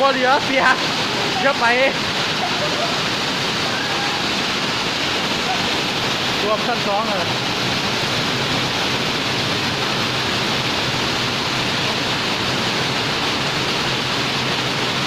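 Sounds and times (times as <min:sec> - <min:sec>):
rainwater pouring and flowing: 0:00.0 - 0:15.0.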